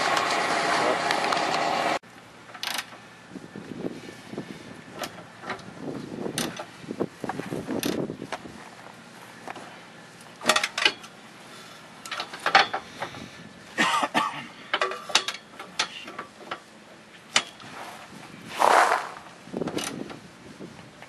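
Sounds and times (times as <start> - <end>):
metal tools clinking: 14.7 - 16.7.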